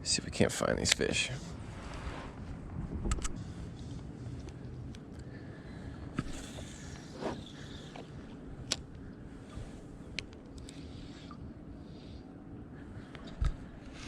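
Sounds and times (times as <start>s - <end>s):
low rustling: 1.4s - 4.4s.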